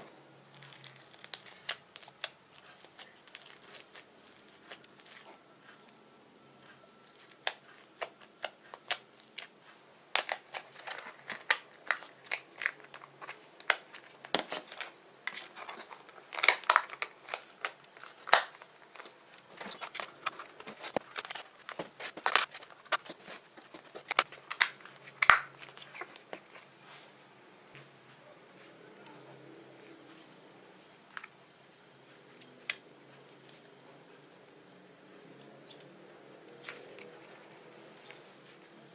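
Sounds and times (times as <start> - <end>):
slime popping and crackling: 0.4 - 5.4, 11.3 - 20.4.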